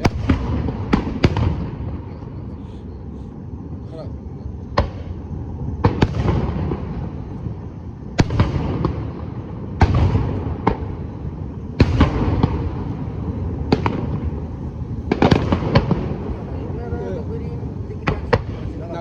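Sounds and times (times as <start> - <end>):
low rumble of booms: 0.0 - 19.0
firework shells bursting: 8.2 - 19.0.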